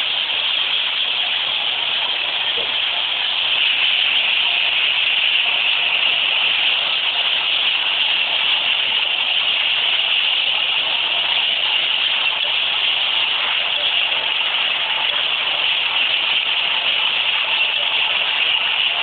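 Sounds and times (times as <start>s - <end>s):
washing machine running: 0.0s - 19.0s.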